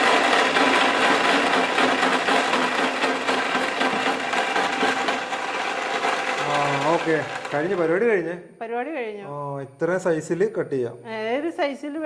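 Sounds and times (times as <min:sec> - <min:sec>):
mixer grinder motor whirring: 0:00.0 - 0:08.2.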